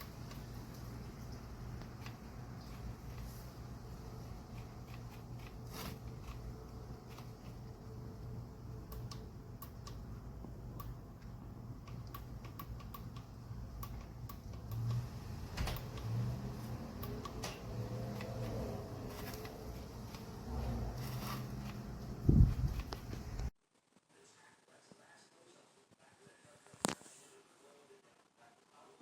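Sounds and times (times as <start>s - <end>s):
small clicks and handling noise: 0.0s - 10.0s, 10.7s - 23.5s.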